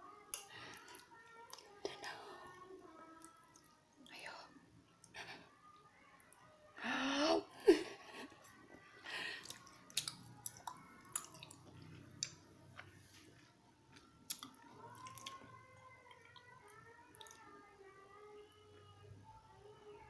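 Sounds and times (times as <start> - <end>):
chewing rice cakes: 8.3 - 17.7
wet mouth clicks and smacks: 9.4 - 12.4, 14.3 - 15.4.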